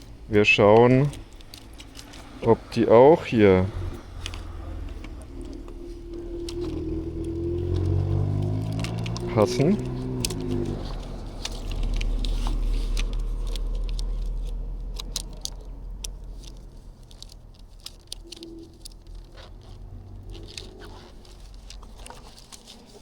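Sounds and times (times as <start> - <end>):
low rumble: 2.0 - 17.6.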